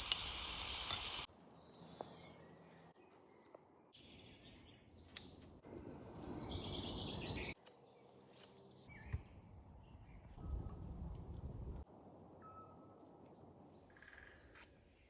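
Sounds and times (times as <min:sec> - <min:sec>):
birds singing: 0:01.5 - 0:10.4.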